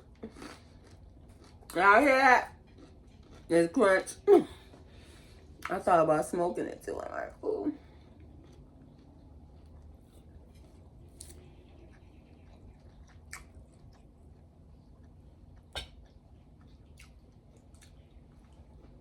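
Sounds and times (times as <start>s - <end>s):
person chewing crunchy food: 0.0s - 1.8s, 2.5s - 3.5s, 7.8s - 19.0s.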